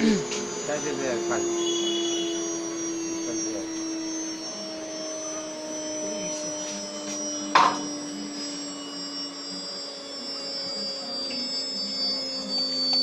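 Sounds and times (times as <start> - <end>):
cnc router humming: 0.0 - 13.0
sharp knock: 7.6 - 7.8.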